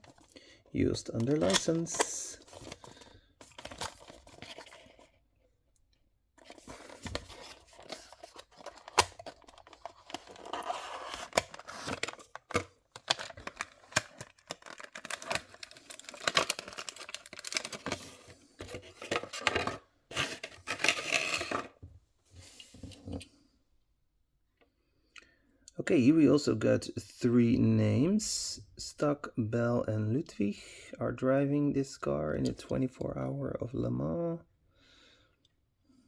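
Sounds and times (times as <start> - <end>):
packaging rustling and tearing: 0.0 - 0.3, 0.9 - 5.2, 6.4 - 21.7.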